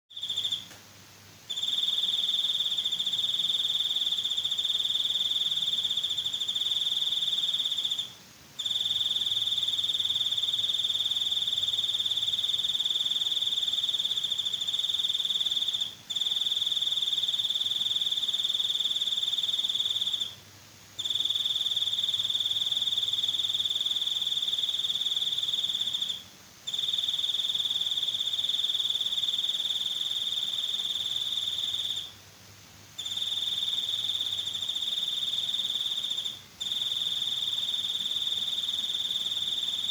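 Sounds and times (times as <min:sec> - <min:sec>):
cricket trilling: 0:00.1 - 0:00.8, 0:01.5 - 0:20.4, 0:21.0 - 0:32.2, 0:33.0 - 0:39.9.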